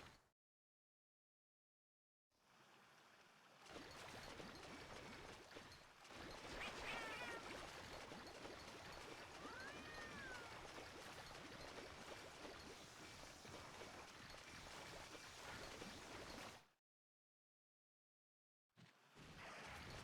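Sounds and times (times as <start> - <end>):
floodwater rushing: 9.3 - 10.8.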